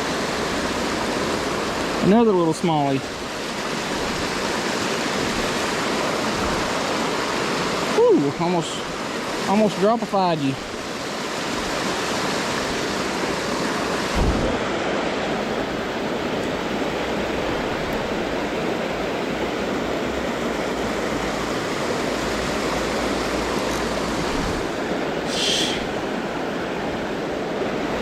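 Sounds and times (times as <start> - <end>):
water rushing over rocks: 0.0 - 28.0
low thump: 14.1 - 14.6.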